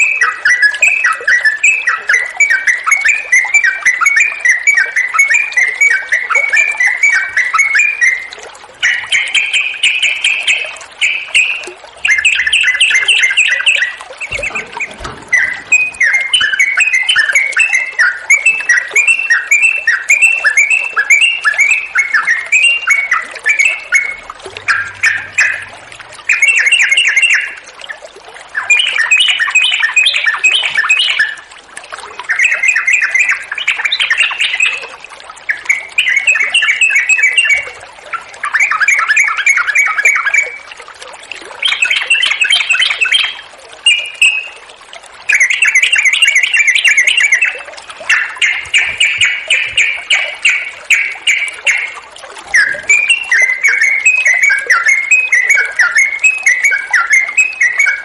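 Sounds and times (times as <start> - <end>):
bulbul singing: 0.0 - 31.5, 41.6 - 44.6, 45.3 - 58.0.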